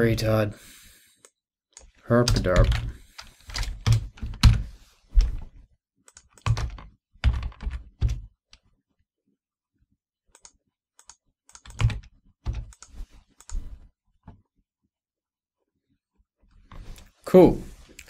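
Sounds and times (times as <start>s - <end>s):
computer keyboard typing: 2.2s - 4.6s, 6.1s - 8.2s, 10.4s - 13.6s.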